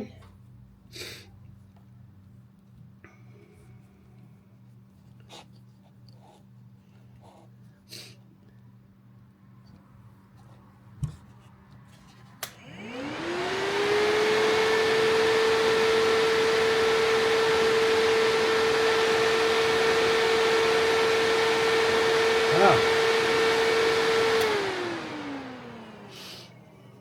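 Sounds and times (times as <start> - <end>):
electric fan motor whining: 12.4 - 26.7.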